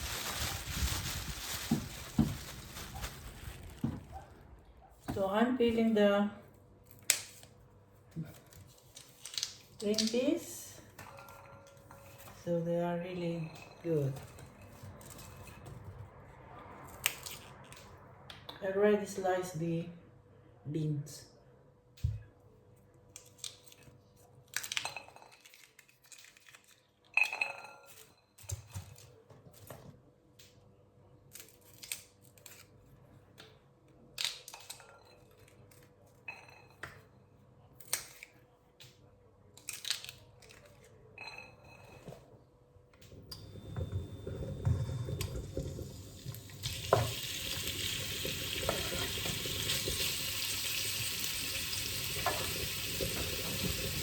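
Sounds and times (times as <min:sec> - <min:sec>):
dishes and utensils clinking: 0:10.9 - 0:12.5, 0:41.2 - 0:42.3
food sizzling in a pan: 0:45.8 - 0:54.0.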